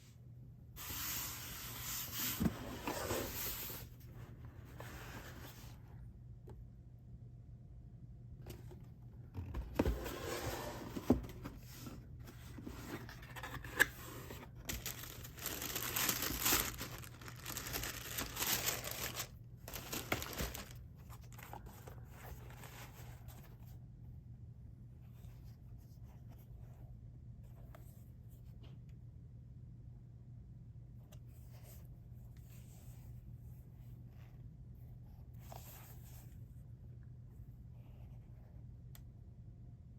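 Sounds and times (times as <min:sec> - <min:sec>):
cardboard and paper crinkling: 0:09.4 - 0:23.6.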